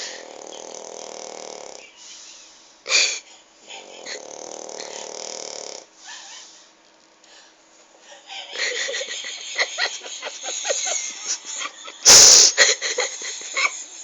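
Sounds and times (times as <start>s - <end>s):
stifled breathy giggling: 3.7s - 5.0s, 8.0s - 14.0s.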